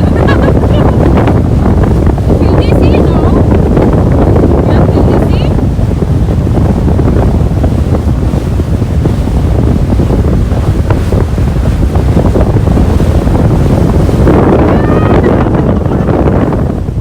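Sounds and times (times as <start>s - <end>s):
rushing water: 0.0s - 17.0s
wind buffeting microphone: 0.0s - 17.0s.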